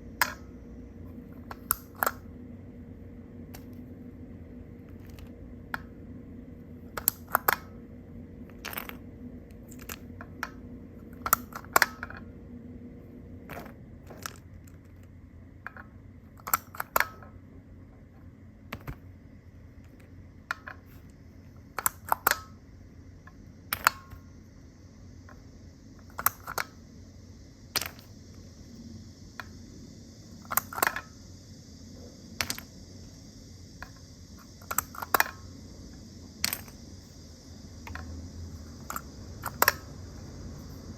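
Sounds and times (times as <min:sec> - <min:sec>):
plastic toy pieces clicking: 0:21.8 - 0:22.4, 0:26.1 - 0:26.8.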